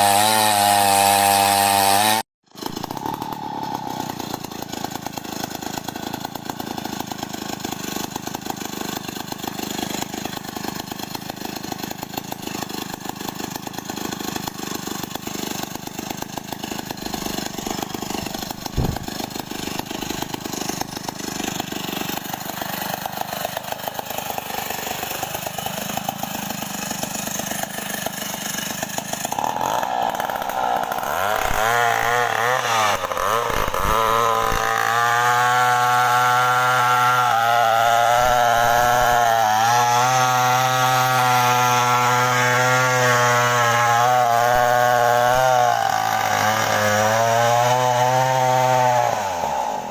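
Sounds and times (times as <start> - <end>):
chainsaw running: 0.0 - 49.9.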